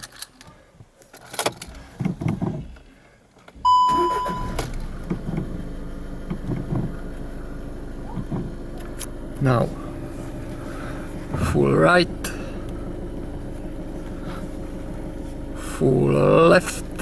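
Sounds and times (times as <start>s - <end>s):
car engine starting and idling: 1.2s - 17.0s
dashboard warning beep: 3.6s - 5.5s.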